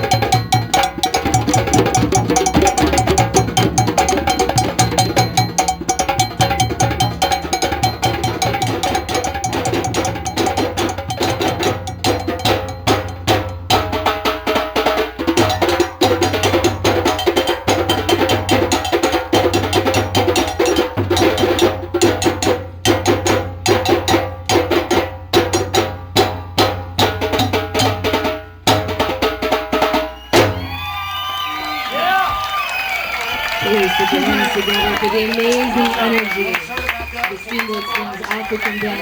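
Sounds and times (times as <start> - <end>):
hand drums playing fast rhythm: 0.0 - 30.6.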